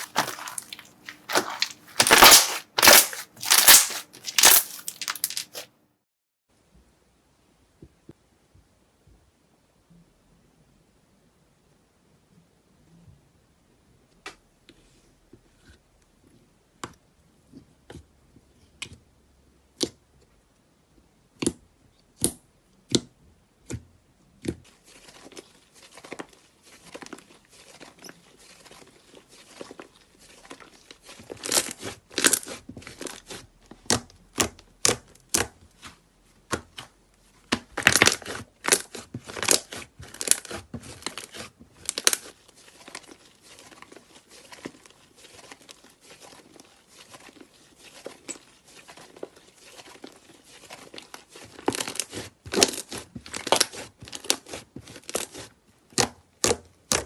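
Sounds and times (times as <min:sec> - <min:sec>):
slime squeezed by hand: 0:00.0 - 0:05.7.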